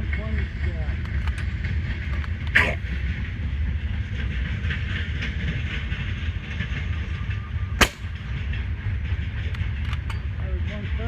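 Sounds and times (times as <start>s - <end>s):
steady low rumble: 0.0s - 11.0s
suppressed rifle shot: 7.8s - 8.2s.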